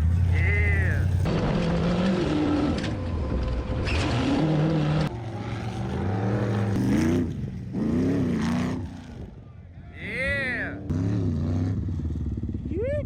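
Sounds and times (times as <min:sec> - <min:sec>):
off-road vehicle engines revving: 0:00.0 - 0:13.0.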